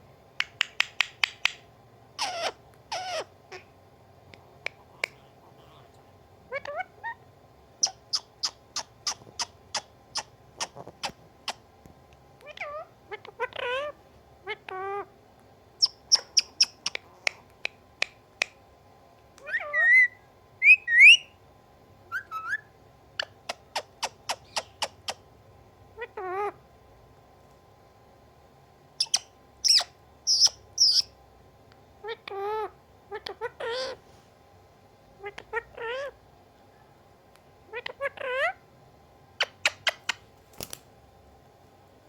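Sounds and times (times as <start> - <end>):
parrot chirping and clicking: 0.4 - 3.2, 15.8 - 18.6, 39.4 - 40.2
parrot meowing calls: 2.2 - 3.7, 6.5 - 7.2, 32.0 - 34.0, 35.2 - 36.2, 37.7 - 38.6.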